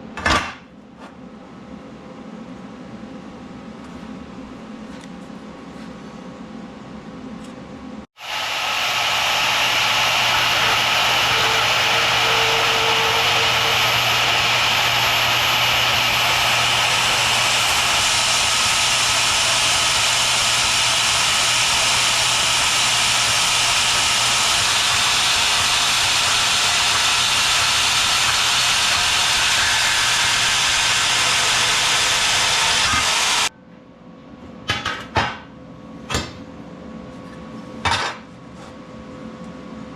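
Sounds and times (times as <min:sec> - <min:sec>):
power saw cutting steel: 0:08.2 - 0:33.5.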